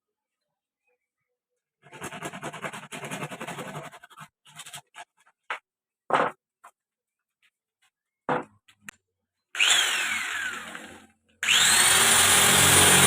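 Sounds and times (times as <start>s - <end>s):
scratchy rubbing: 1.8s - 5.4s.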